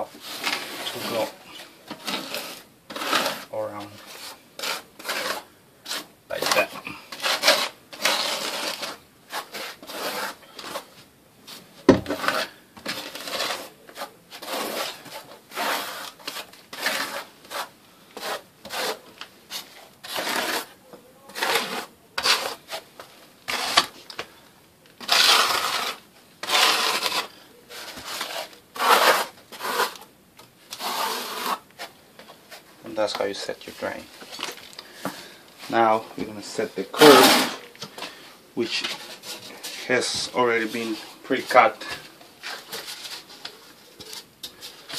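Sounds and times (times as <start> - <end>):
trowel scraping mortar: 0.0 - 10.9, 12.0 - 24.2, 25.0 - 30.1, 30.7 - 33.6, 35.7 - 37.7.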